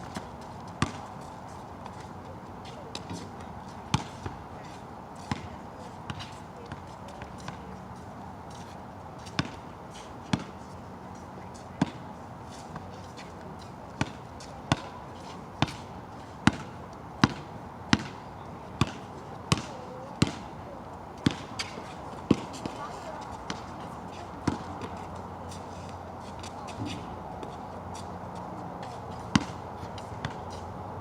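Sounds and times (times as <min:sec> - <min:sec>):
basketball bouncing on wet court: 0:00.8 - 0:01.0, 0:03.9 - 0:04.4, 0:05.2 - 0:05.5, 0:09.3 - 0:09.6, 0:11.8 - 0:12.0, 0:14.0 - 0:15.0, 0:16.4 - 0:18.2, 0:18.8 - 0:20.5, 0:21.2 - 0:22.8, 0:29.3 - 0:29.6, 0:30.2 - 0:30.4.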